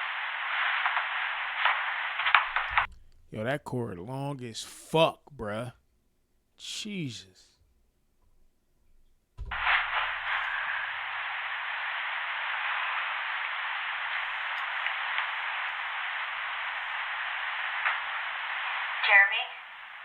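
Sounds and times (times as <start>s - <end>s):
electronic static hiss: 0.0s - 3.3s, 9.4s - 20.0s.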